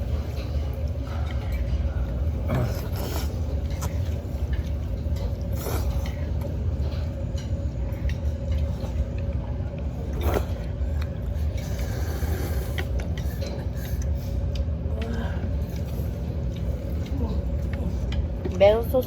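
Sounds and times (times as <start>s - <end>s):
faint steady hum: 0.0s - 19.0s
low mechanical rumble: 0.0s - 19.0s.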